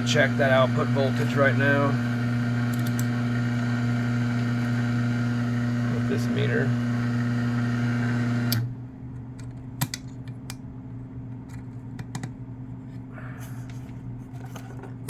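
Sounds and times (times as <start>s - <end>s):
low electrical hum: 8.5s - 15.0s.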